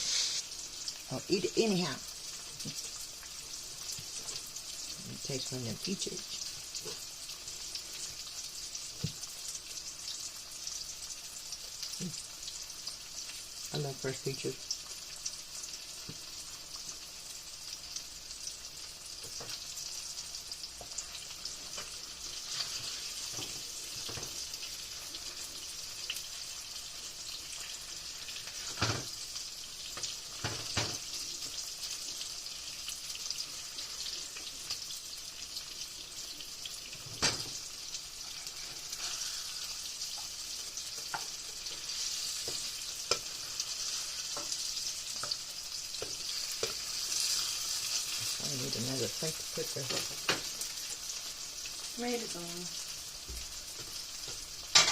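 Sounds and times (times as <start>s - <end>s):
frying sizzle with crackles: 0.0s - 54.9s.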